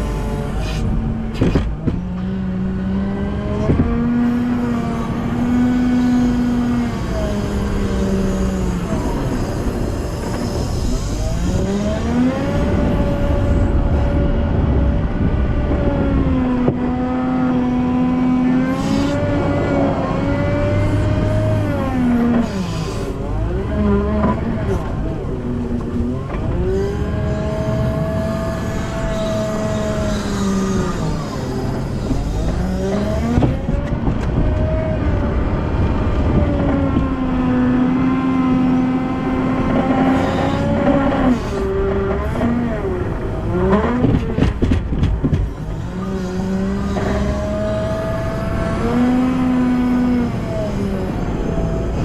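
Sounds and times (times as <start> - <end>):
diesel engine revving: 0.0 - 52.0
clatter of knocks: 43.7 - 45.8.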